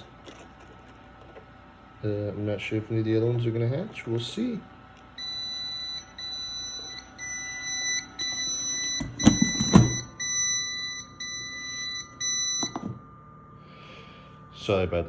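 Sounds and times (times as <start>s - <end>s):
incubator alarm beeping: 5.1s - 15.0s.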